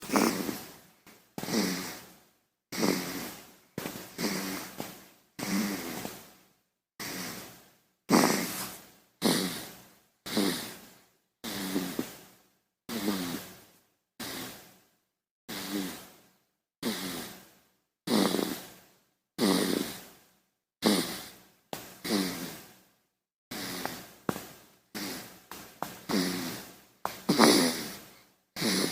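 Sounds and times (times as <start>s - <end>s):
baby snoring: 0.0s - 0.7s, 1.4s - 2.0s, 2.7s - 3.4s, 4.2s - 4.8s, 5.4s - 6.1s, 7.0s - 7.5s, 8.1s - 12.2s, 12.9s - 13.6s, 14.2s - 14.6s, 15.5s - 16.1s, 16.8s - 17.4s, 18.1s - 18.7s, 19.4s - 20.1s, 20.8s - 21.4s, 22.0s - 22.6s, 23.5s - 24.1s, 24.9s - 25.4s, 26.0s - 28.9s.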